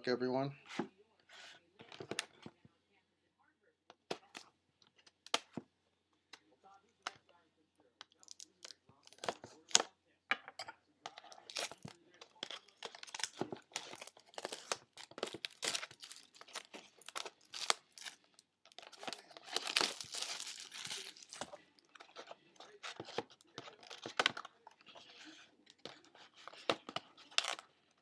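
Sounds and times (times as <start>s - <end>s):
packaging crackling and crinkling: 11.3s - 28.0s
packaging tearing: 11.4s - 22.2s.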